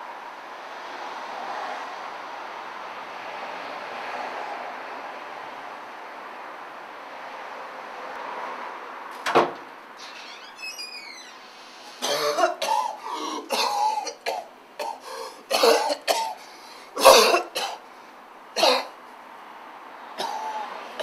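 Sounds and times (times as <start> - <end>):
person coughing harshly: 12.0 - 16.4, 17.0 - 17.8, 18.6 - 19.0, 20.2 - 20.7.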